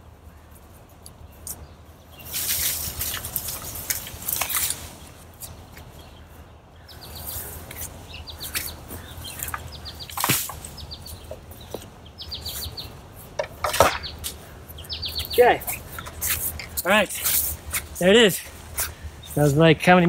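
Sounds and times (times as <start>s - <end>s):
high falling bird chirps: 0.0s - 19.6s
rustling and handling noises: 0.5s - 6.2s, 7.1s - 19.6s.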